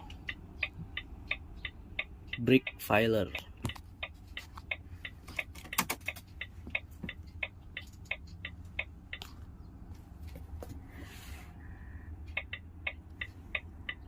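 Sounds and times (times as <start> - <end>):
indicator flasher ticking: 0.0 - 5.5, 6.1 - 9.3, 12.1 - 14.0
idling engine hum: 0.0 - 14.0.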